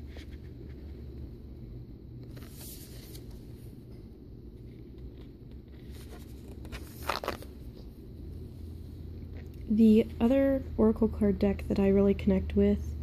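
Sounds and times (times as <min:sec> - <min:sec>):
low steady hum: 0:00.0 - 0:13.0
cards sliding and rubbing: 0:02.2 - 0:03.6, 0:04.7 - 0:07.6
card scrape: 0:05.1 - 0:07.5.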